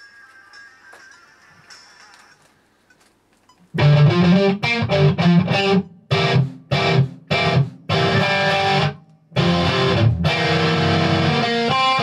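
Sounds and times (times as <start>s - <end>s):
electric guitar lead lines: 3.7s - 12.0s.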